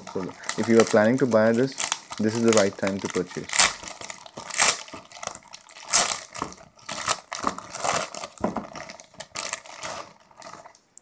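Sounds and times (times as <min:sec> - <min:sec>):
package wrapping crinkling: 0:00.0 - 0:10.8.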